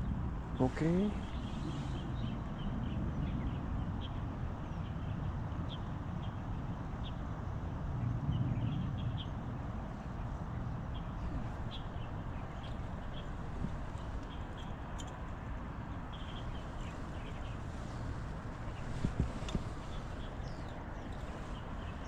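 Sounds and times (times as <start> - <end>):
small birds chirping: 0.6 - 6.4, 8.6 - 22.0
steady low rumble: 9.5 - 22.0.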